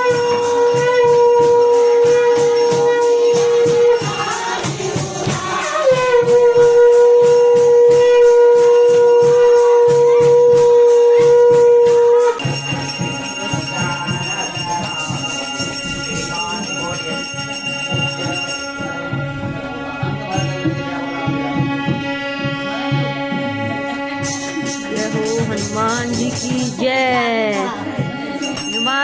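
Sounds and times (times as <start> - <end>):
loud held note: 0.0 - 4.2
jingling bells: 0.0 - 7.8, 11.0 - 29.0
devotional music: 0.0 - 29.0.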